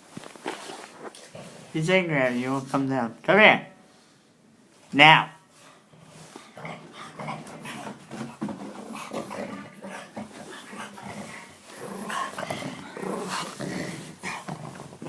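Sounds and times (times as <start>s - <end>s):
dog growling: 6.5s - 15.0s.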